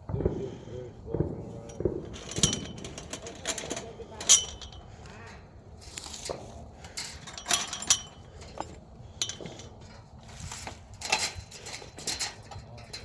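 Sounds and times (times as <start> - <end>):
footsteps crunching on rough ground: 5.8 - 6.6.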